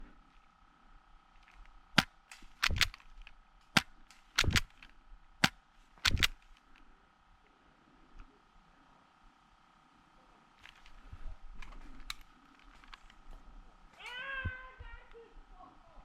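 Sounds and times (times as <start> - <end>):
airsoft pistol cracks: 2.0 - 3.1, 3.7 - 6.4.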